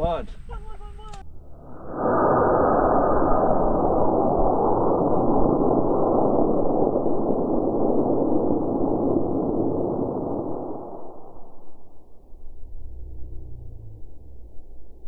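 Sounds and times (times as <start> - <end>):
rocket motor roaring: 1.5 - 11.6.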